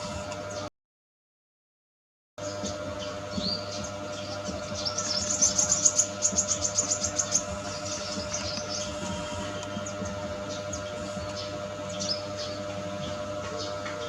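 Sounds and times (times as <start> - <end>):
steady hum: 0.0 - 0.7, 2.4 - 14.0
small bird chirping: 2.4 - 13.8.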